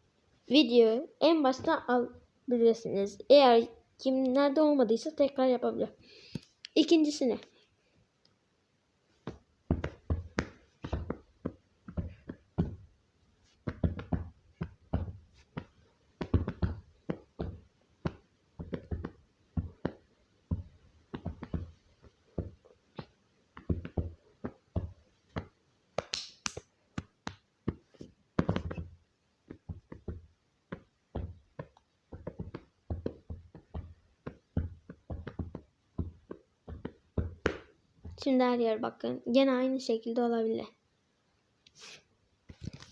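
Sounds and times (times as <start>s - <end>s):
light taps and knocks: 13.6s - 25.6s, 27.0s - 38.2s.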